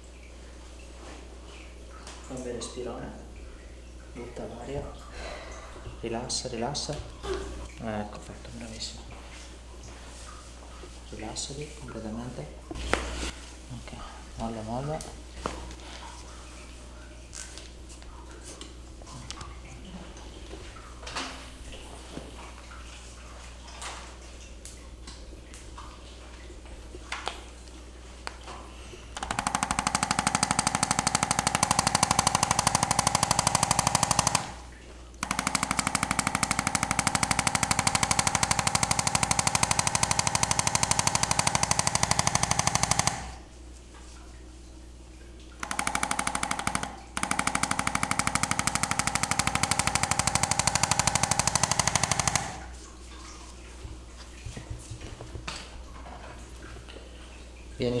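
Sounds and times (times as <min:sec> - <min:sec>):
percussion massager hammering: 0:29.2 - 0:43.5, 0:45.6 - 0:52.8.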